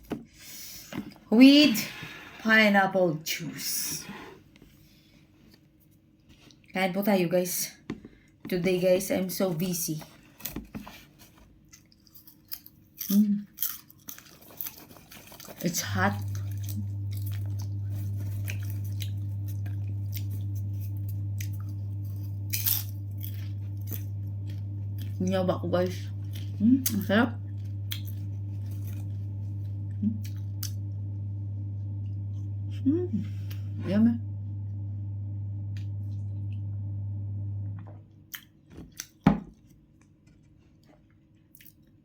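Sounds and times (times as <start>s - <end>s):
chewing crunches and clicks: 11.6s - 25.2s, 27.6s - 29.1s, 30.2s - 30.8s, 38.3s - 42.0s
steady low hum: 16.0s - 37.8s.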